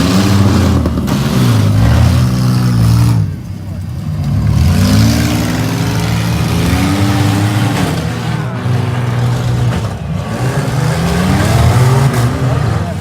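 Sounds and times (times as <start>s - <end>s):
minivan engines revving hard: 0.0s - 13.0s.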